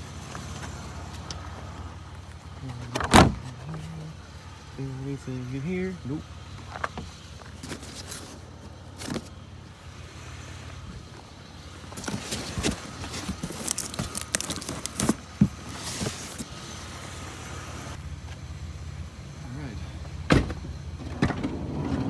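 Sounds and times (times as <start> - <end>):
vehicle engine idling: 0.0 - 22.0
junk knocking and rattling: 6.4 - 9.4, 10.8 - 16.5, 20.0 - 22.0.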